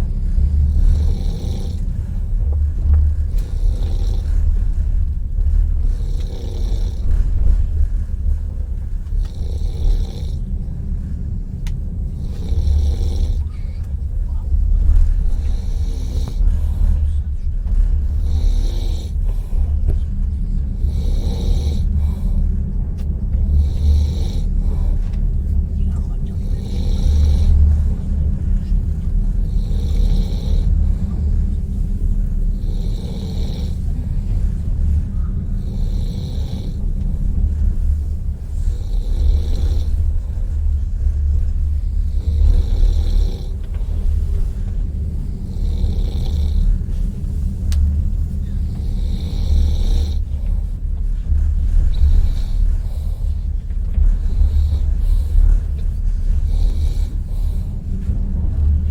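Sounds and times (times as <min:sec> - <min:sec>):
train carriage rumble: 0:00.0 - 0:58.9
person snoring loudly: 0:00.7 - 0:01.9, 0:05.8 - 0:07.4, 0:09.2 - 0:10.5, 0:12.2 - 0:13.6, 0:18.1 - 0:19.7, 0:20.8 - 0:22.4, 0:26.4 - 0:27.9, 0:29.3 - 0:31.3, 0:32.5 - 0:34.3, 0:35.6 - 0:37.4, 0:38.6 - 0:40.2, 0:41.9 - 0:44.1, 0:45.3 - 0:46.9, 0:48.6 - 0:50.3.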